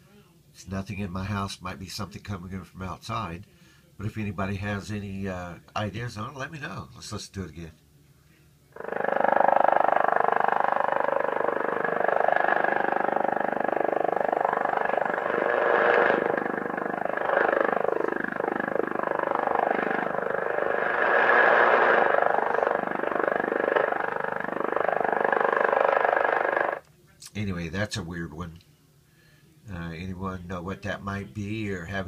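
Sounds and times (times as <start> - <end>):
shortwave radio pulse signal: 8.8 - 26.8.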